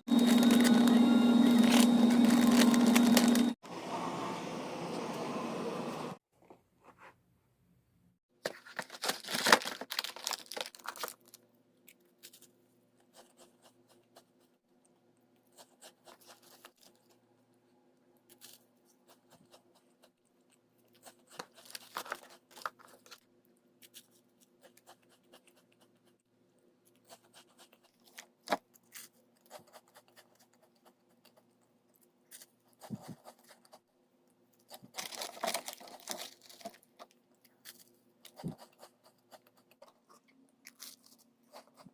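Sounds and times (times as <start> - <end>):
plastic packaging tearing and crinkling: 0.1 - 3.6, 8.5 - 11.4, 21.3 - 23.2, 34.7 - 37.9.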